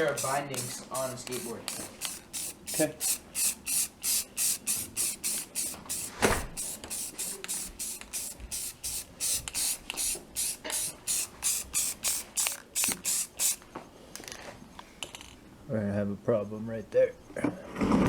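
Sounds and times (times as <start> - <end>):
aerosol can spraying in bursts: 0.0 - 13.6.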